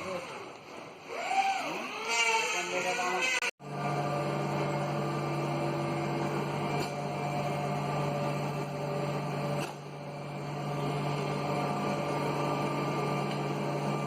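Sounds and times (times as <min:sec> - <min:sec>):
electric machine hum: 0:00.0 - 0:14.0.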